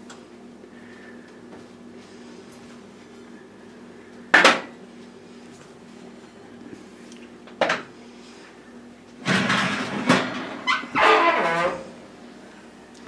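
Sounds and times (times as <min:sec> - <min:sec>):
metal pans clattering: 0:09.2 - 0:11.8.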